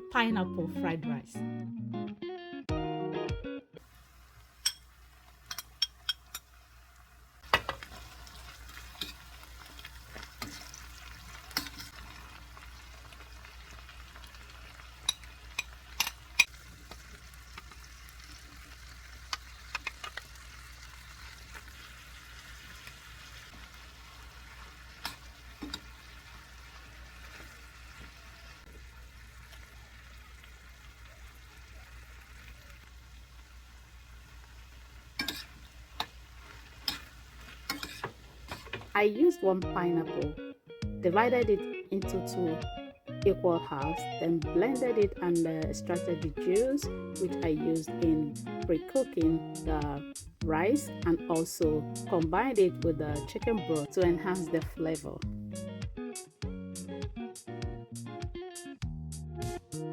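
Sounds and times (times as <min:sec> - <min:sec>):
food sizzling in a hot pan: 0:03.8 - 0:39.0.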